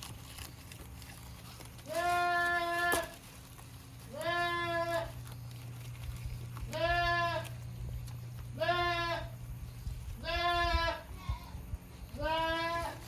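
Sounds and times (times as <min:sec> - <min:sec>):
goat bleating: 0:01.8 - 0:03.3, 0:04.1 - 0:05.4, 0:06.6 - 0:07.7, 0:08.4 - 0:09.4, 0:10.1 - 0:13.0.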